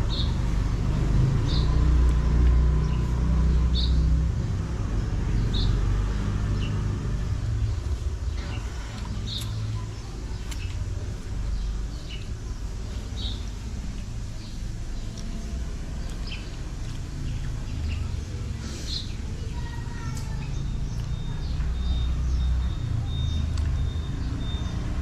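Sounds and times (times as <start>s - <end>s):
birds chirping: 0.0s - 25.0s
traffic rumble: 0.0s - 25.0s.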